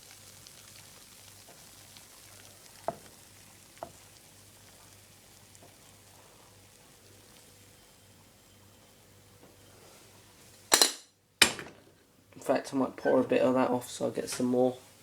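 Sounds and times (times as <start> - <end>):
coffee maker sizzling hiss: 0.0 - 10.7.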